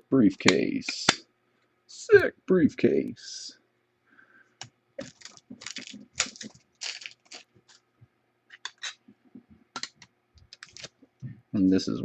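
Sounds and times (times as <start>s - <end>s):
wrappers crinkling: 5.0s - 7.8s, 9.8s - 11.0s
plastic card holders clicking: 9.8s - 10.9s.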